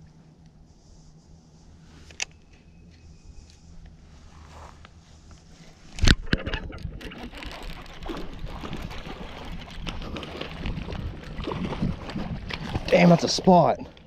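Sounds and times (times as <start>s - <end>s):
clattering of landed fish: 6.0s - 13.6s
water splashing: 6.3s - 14.0s.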